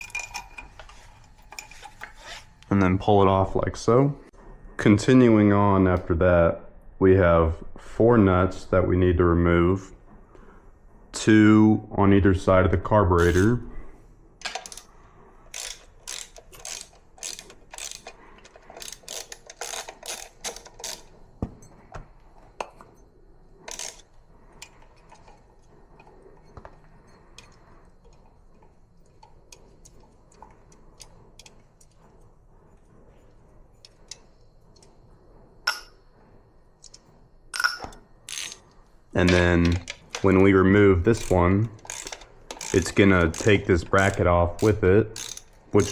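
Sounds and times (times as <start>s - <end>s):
ratchet wrench clicking: 14.5s - 14.9s, 15.5s - 21.1s, 23.7s - 24.0s, 38.3s - 38.6s, 41.1s - 45.9s.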